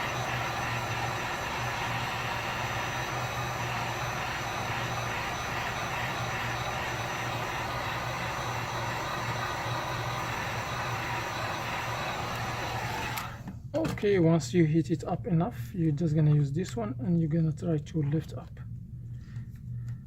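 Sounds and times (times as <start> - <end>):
hot-air gun blowing: 0.0 - 13.5.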